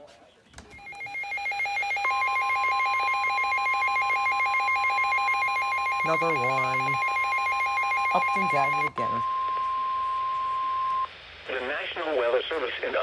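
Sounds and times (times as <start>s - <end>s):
warbling alarm tone: 0.8s - 11.1s.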